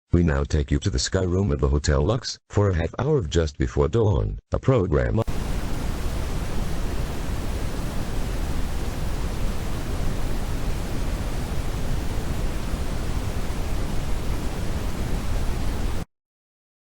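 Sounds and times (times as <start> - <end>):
loud static hiss: 5.2 - 16.1.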